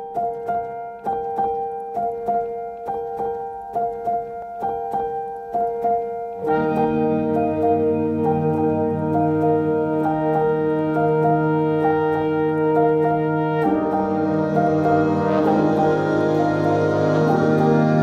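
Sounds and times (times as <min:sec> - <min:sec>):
repeating keyboard notes: 0:00.0 - 0:18.0
sustained chords: 0:06.3 - 0:18.0.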